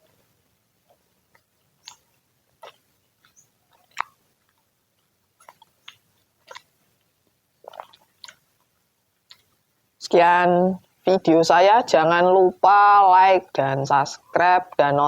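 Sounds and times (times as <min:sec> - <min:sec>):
person chewing crunchy food: 0:00.9 - 0:08.7, 0:09.3 - 0:09.6
mouth clicks: 0:01.3 - 0:04.6, 0:05.4 - 0:06.8, 0:07.6 - 0:08.5, 0:09.3 - 0:09.6.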